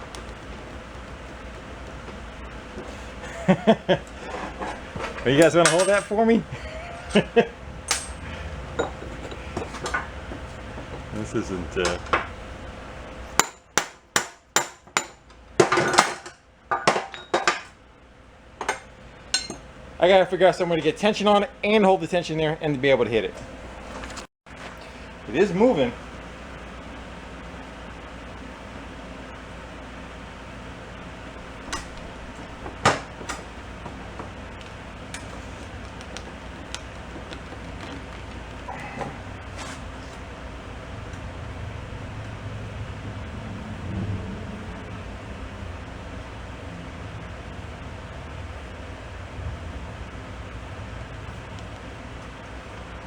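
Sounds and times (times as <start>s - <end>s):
fan and air conditioner hum: 0.0s - 53.0s
hammer striking metal: 5.4s - 6.2s, 7.9s - 8.2s, 13.4s - 17.7s, 18.6s - 19.7s
tools knocking on metal: 7.2s - 11.1s, 18.6s - 19.6s
clattering knocks: 31.5s - 34.5s.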